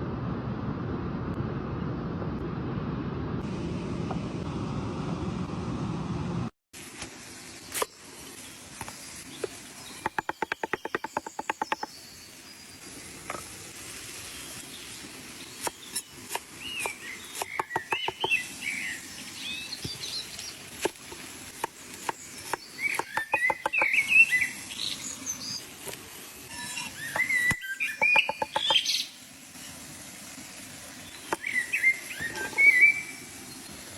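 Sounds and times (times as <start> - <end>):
birds chirping: 9.2 - 12.8, 22.0 - 25.7, 26.5 - 29.1, 31.0 - 33.8.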